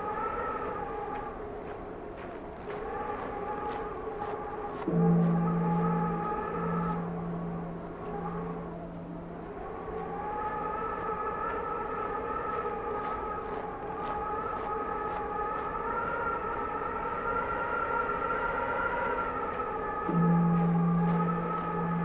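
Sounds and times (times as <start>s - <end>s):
whistling wind: 0.0s - 22.0s
large temple bell ringing: 4.8s - 12.8s, 20.0s - 22.0s.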